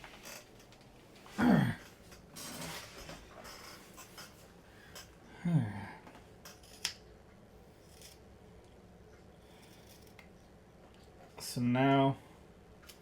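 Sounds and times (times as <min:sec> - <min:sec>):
knife scraping wood: 0:07.8 - 0:08.3, 0:09.4 - 0:10.3.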